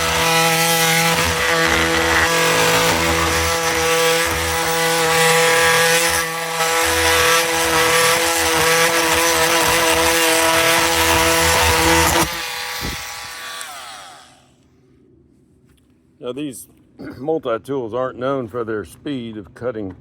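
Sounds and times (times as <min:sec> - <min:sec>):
motor winding down: 0:00.0 - 0:14.6
oscillating multi-tool cutting wood: 0:00.0 - 0:14.6.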